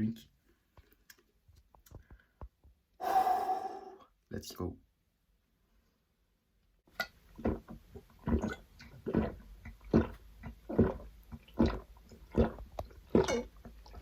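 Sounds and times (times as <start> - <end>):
person gulping a drink: 7.4 - 14.0.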